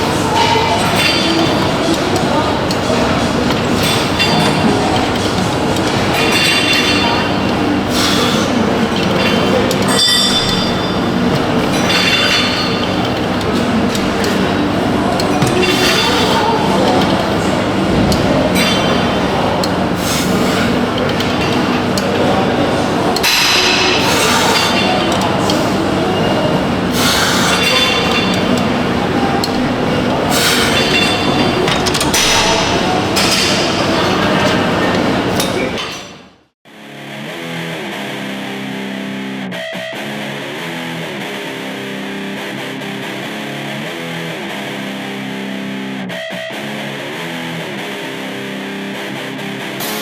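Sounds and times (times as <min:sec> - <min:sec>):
weight equipment clanking: 0:00.0 - 0:36.3.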